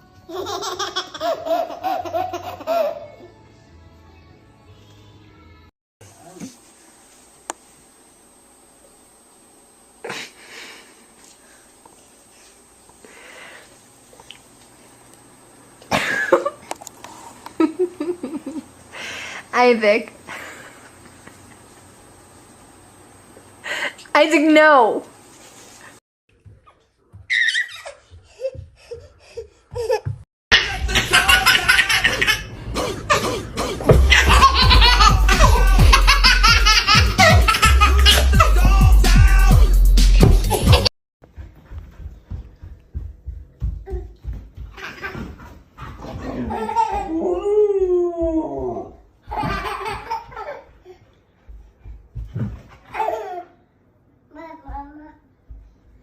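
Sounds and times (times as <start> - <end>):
person laughing: 15.9 - 16.6, 17.6 - 18.7, 28.3 - 40.9.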